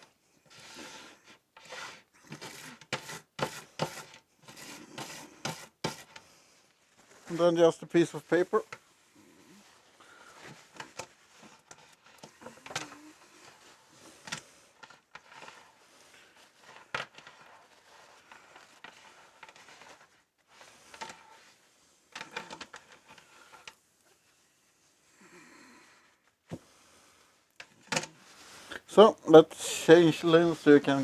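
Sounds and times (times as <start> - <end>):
paper rustling: 28.4 - 31.0.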